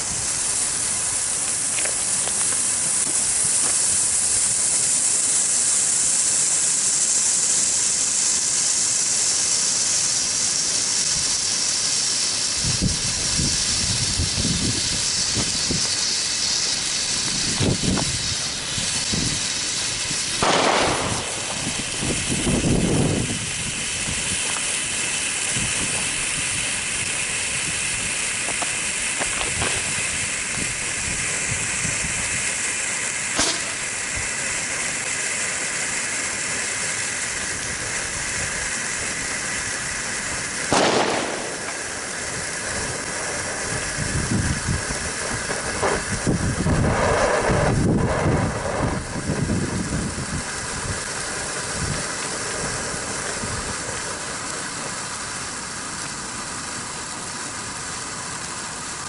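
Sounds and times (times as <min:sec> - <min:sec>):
firework fountain hissing: 0:00.0 - 0:59.0
sharp firework bang: 0:20.1 - 0:24.6, 0:28.5 - 0:30.2, 0:33.3 - 0:34.3, 0:40.6 - 0:44.0
dull firework thumps: 0:33.4 - 0:33.8.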